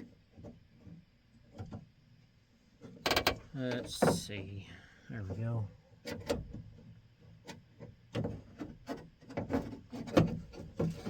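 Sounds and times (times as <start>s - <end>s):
clicks and knocks of hand work: 7.5s - 11.0s.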